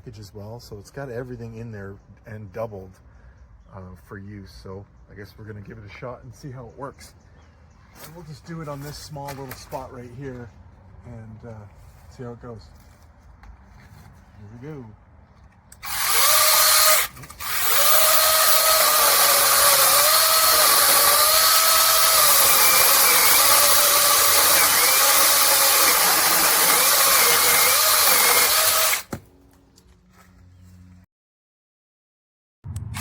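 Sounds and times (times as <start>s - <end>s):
mini chainsaw electric whine: 15.7s - 29.2s.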